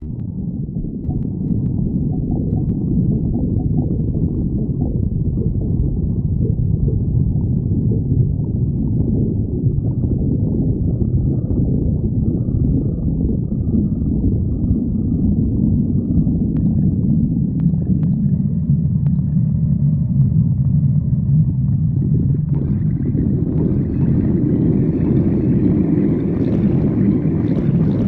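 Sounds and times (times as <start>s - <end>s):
stomach growling: 0.0s - 28.0s.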